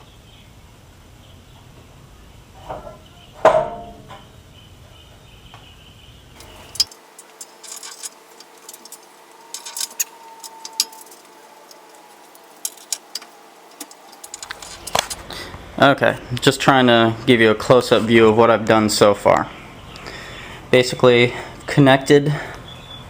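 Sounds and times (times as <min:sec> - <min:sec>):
bolts and parts clicking: 0:06.4 - 0:15.2
ringing metal clank: 0:06.4 - 0:15.2.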